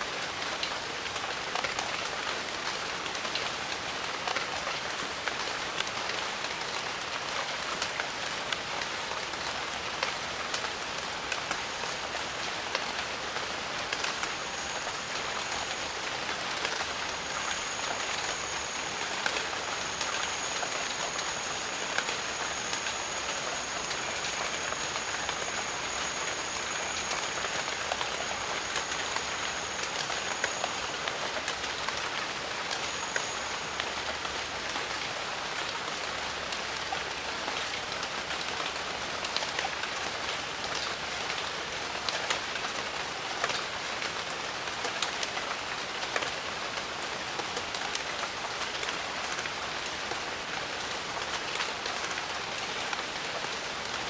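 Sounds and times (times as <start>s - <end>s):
rain on foliage: 0.0s - 54.0s
thin high steady tone: 9.1s - 35.1s.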